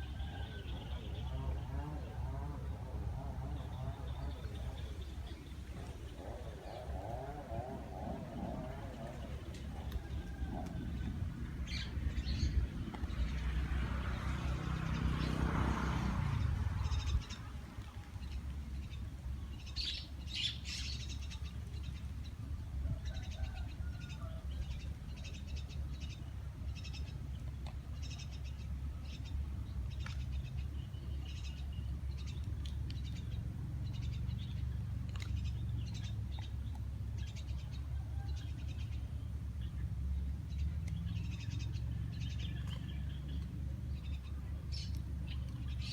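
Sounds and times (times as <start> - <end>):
steady low rumble: 0.0 - 15.3
small birds chirping: 39.6 - 45.9.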